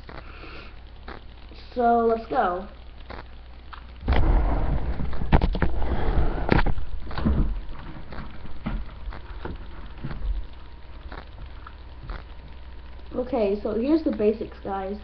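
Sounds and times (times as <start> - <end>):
handling noise rumble: 2.9 - 13.4.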